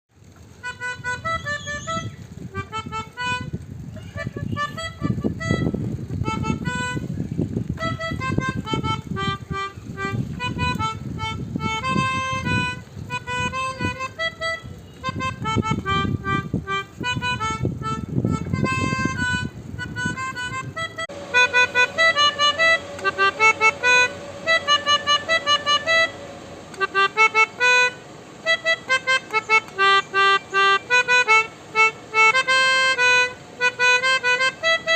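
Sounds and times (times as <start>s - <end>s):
reedy horn melody: 4.2s - 7.1s, 7.8s - 34.9s
low rumble: 17.2s - 28.5s.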